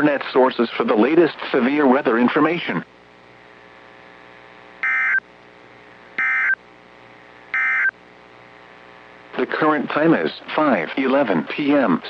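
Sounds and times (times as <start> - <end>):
short electronic beeps: 4.8 - 5.2, 6.2 - 6.6, 7.6 - 7.9.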